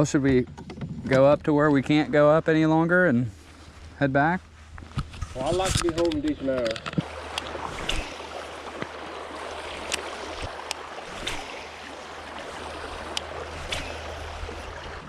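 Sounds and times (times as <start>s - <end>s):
creek water running: 1.1s - 15.0s
small splashes: 5.4s - 15.0s.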